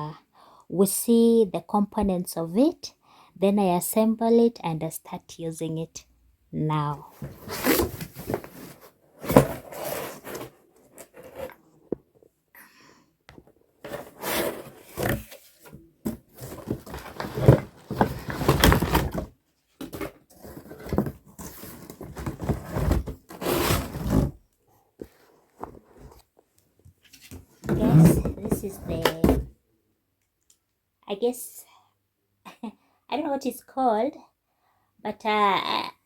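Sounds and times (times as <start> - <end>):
cardboard box being opened: 7.1 - 11.6, 13.8 - 24.4, 27.2 - 29.5
packaging scraping and rustling: 7.1 - 11.7, 13.8 - 19.3, 19.9 - 24.4.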